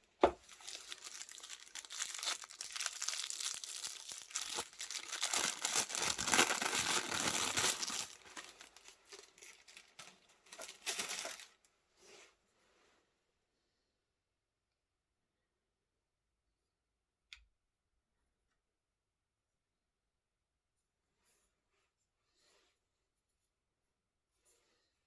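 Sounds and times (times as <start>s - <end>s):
packaging crinkling and tearing: 0.3s - 11.6s.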